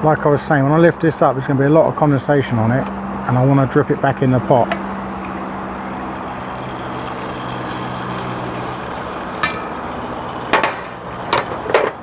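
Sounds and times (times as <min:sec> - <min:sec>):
gas burner hissing: 0:00.0 - 0:12.0
food frying in pan: 0:04.8 - 0:12.0.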